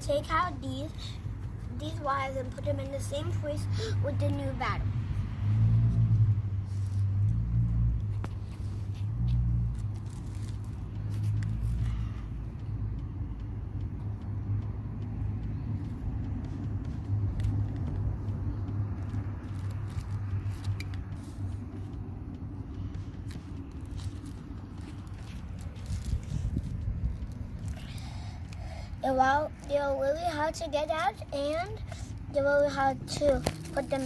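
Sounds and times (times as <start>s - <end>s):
steady low rumble: 0.0s - 34.0s
clicks and taps of wire connectors: 9.7s - 27.8s.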